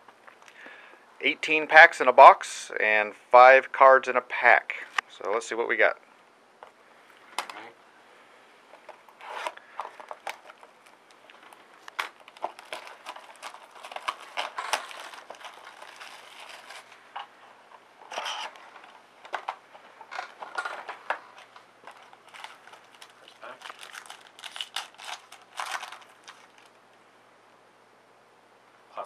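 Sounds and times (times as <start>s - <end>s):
card wrapper tearing and crinkling: 9.2s - 17.2s, 18.0s - 19.0s, 20.1s - 26.8s.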